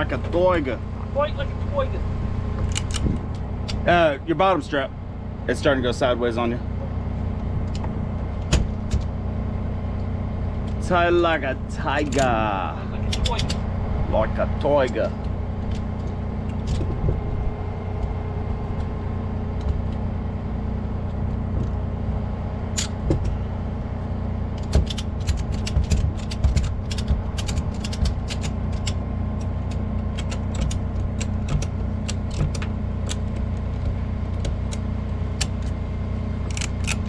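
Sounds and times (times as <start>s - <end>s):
engine idling: 0.0s - 37.0s
ratchet strap pawl clicking: 24.6s - 35.8s, 36.4s - 37.0s.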